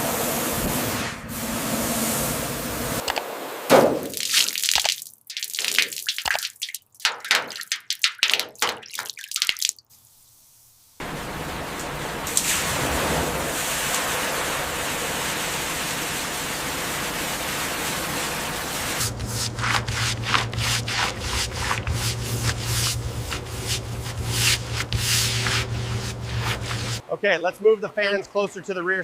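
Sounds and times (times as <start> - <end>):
short scraping strokes: 19.0 - 27.0.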